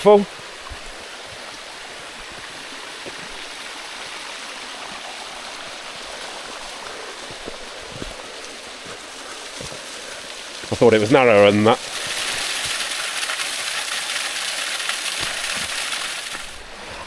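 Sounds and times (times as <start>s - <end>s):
stream running over rocks: 0.0s - 17.0s
faint footsteps on trail: 0.3s - 12.1s.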